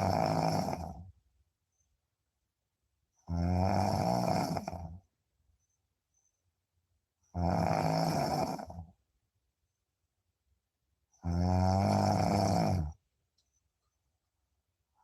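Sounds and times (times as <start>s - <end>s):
person snoring: 0.0s - 1.0s, 3.3s - 5.0s, 7.3s - 8.9s, 11.2s - 13.0s.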